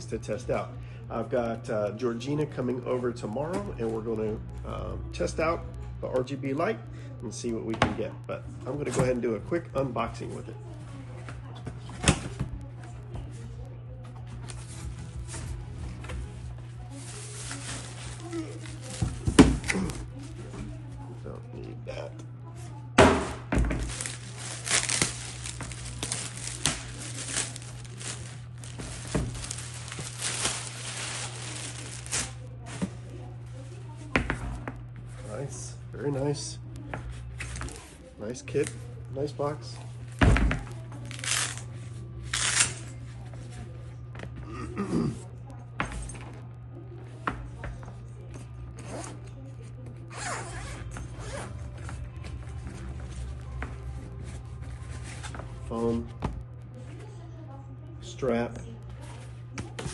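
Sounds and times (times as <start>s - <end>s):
steady low hum: 0.0s - 59.9s
packaging crinkling and rustling: 16.9s - 20.0s, 23.8s - 32.8s, 40.7s - 41.7s
zipper rasping open: 50.1s - 51.5s.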